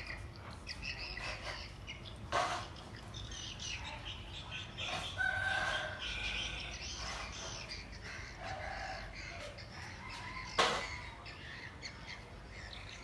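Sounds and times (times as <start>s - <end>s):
rooster crowing: 5.2s - 6.4s, 8.4s - 10.9s.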